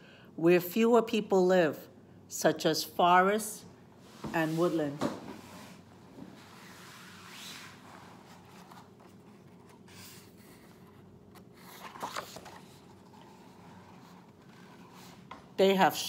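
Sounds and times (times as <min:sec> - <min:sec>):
paper pages rustling: 0:06.5 - 0:15.4.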